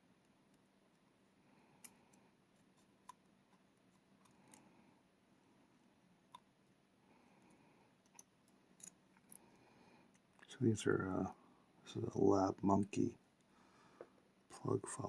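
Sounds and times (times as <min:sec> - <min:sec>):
small metal parts clicking: 0:08.0 - 0:09.4.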